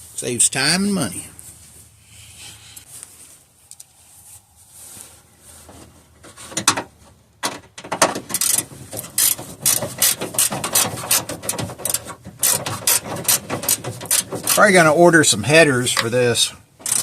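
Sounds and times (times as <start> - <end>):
ratchet wrench clicking: 8.4 - 10.5, 11.9 - 14.6.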